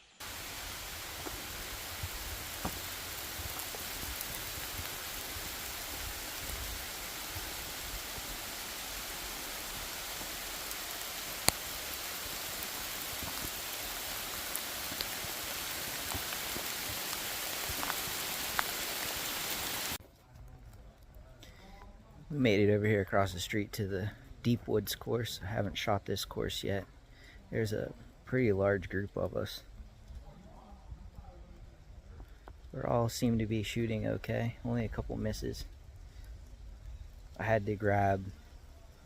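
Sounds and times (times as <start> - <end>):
steady rain falling: 0.0 - 39.0
ticks of raindrops: 0.2 - 21.6, 28.8 - 39.0.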